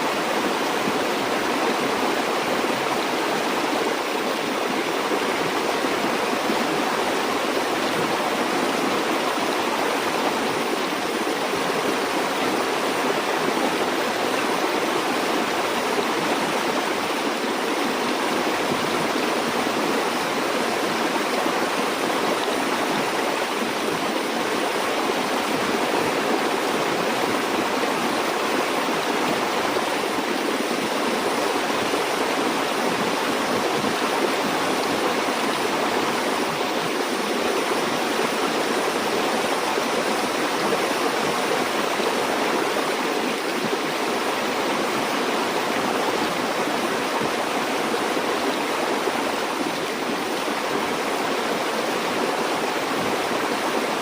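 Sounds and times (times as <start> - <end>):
stream water flowing: 0.0 - 54.0.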